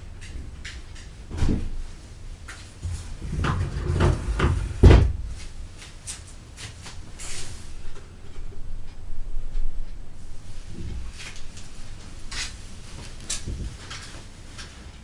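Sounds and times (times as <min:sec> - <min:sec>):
short rustle: 0:06.1 - 0:07.8.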